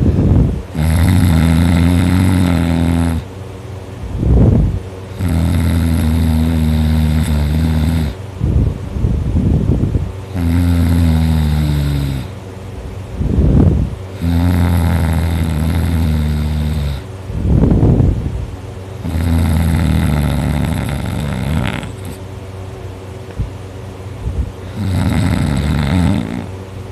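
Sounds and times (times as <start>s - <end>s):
person snoring loudly: 0.7s - 3.3s, 4.3s - 8.2s, 10.3s - 12.4s, 14.1s - 17.1s, 19.0s - 22.2s, 24.6s - 26.5s
noisy breaths: 4.1s - 12.5s, 13.2s - 18.2s, 19.0s - 22.3s, 24.2s - 26.6s.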